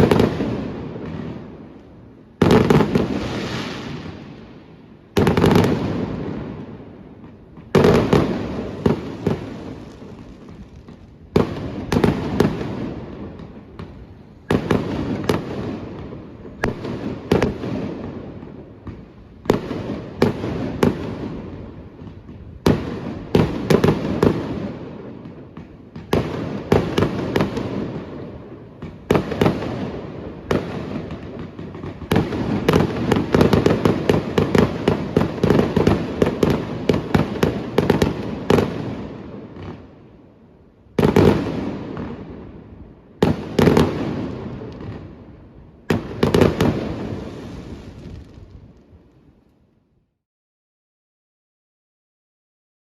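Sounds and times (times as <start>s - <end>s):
firework bangs: 0.0s - 40.0s, 40.9s - 48.8s
firework crackle: 0.0s - 40.1s, 40.9s - 49.6s.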